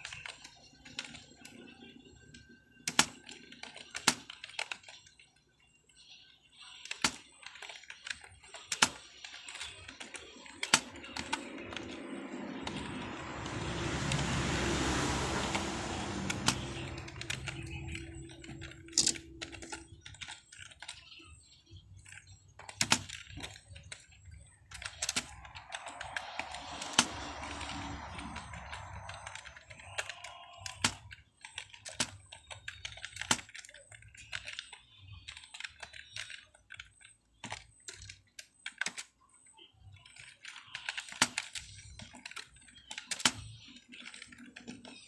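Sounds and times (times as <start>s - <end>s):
computer keyboard typing: 0.0s - 5.3s, 6.7s - 45.0s
broad rushing noise: 10.7s - 19.9s, 25.1s - 30.2s.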